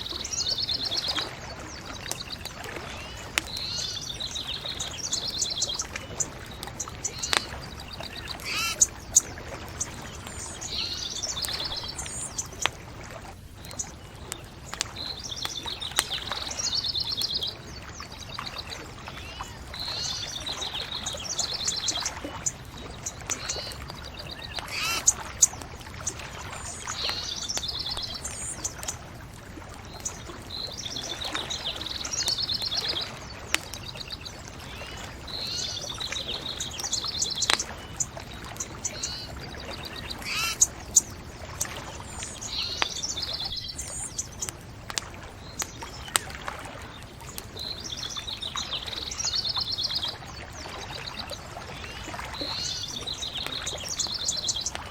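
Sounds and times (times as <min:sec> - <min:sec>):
birds singing: 0:00.0 - 0:12.9, 0:13.5 - 0:54.9
bonfire crackling and popping: 0:01.3 - 0:19.0, 0:20.4 - 0:39.5, 0:40.1 - 0:48.6
bird trilling: 0:06.9 - 0:09.0, 0:21.6 - 0:25.5, 0:40.1 - 0:41.1.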